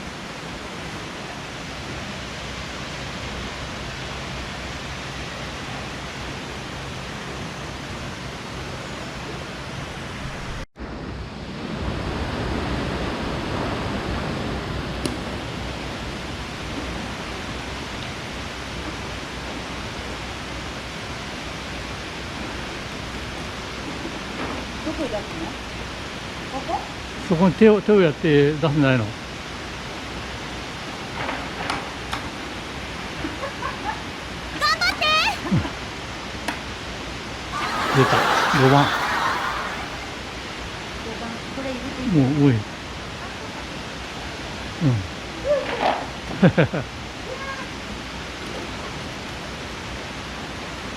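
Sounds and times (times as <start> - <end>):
outdoor rushing noise: 37.6 - 40.2.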